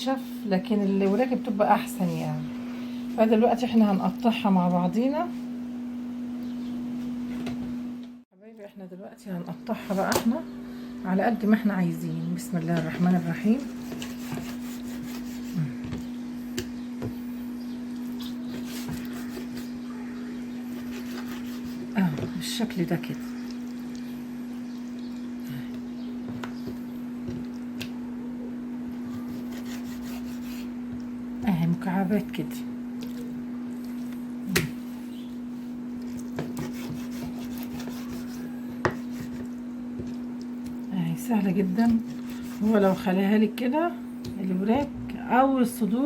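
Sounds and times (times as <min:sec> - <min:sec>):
steady low hum: 0:00.0 - 0:46.0
knife cutting on cutting board: 0:13.6 - 0:15.6, 0:18.2 - 0:19.7, 0:20.7 - 0:21.9, 0:29.1 - 0:30.7, 0:36.4 - 0:40.2, 0:41.9 - 0:43.0.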